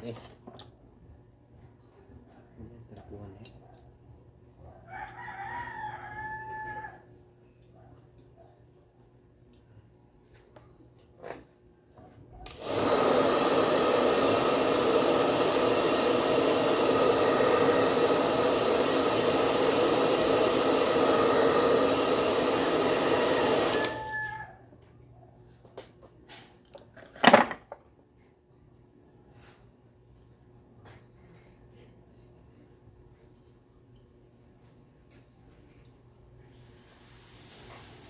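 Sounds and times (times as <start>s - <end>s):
blender motor running: 12.5s - 24.5s, 36.7s - 38.0s.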